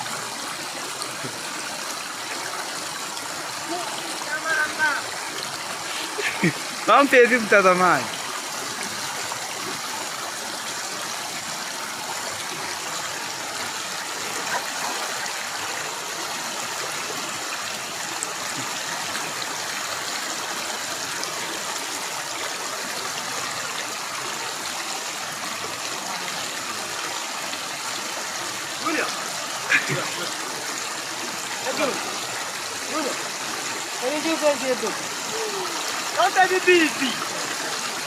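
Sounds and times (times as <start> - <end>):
river water rushing: 0.0 - 38.0.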